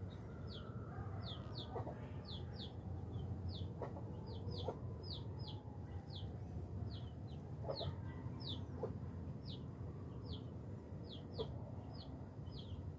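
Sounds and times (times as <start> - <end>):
bird chirping: 0.0 - 12.9.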